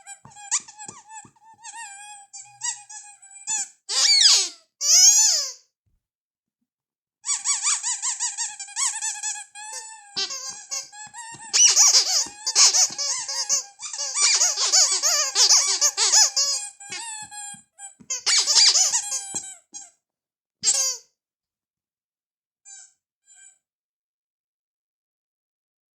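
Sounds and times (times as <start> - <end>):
rubber squeaky toy squeaks: 0.0 - 5.6, 7.3 - 20.0, 20.6 - 21.0, 22.7 - 23.6.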